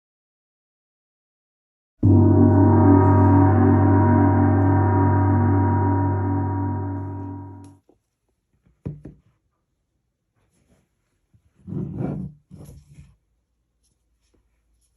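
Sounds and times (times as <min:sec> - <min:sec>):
deep gong-like ringing tone: 0:02.0 - 0:07.7.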